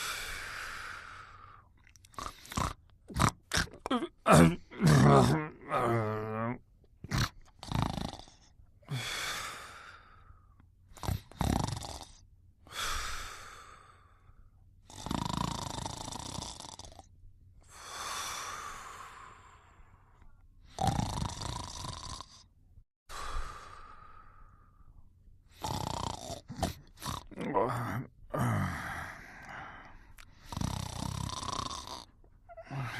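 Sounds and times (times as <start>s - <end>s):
person snoring: 0.0s - 10.2s, 11.0s - 14.0s, 14.9s - 17.1s, 20.7s - 22.5s, 25.5s - 32.9s.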